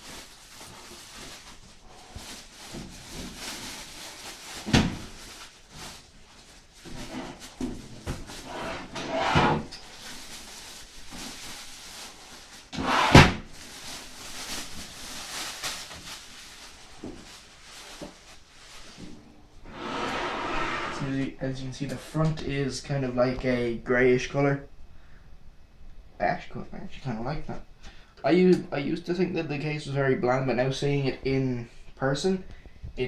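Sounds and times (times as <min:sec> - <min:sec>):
packaging rustling and scraping: 0:00.0 - 0:19.0.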